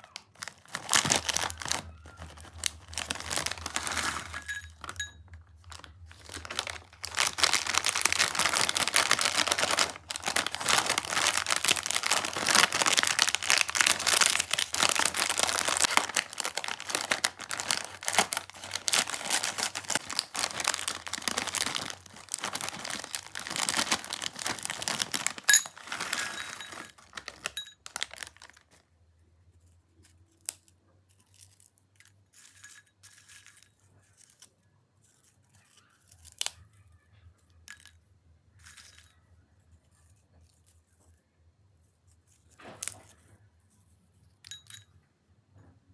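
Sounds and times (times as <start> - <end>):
plastic snack packets crinkling: 0.0 - 28.8.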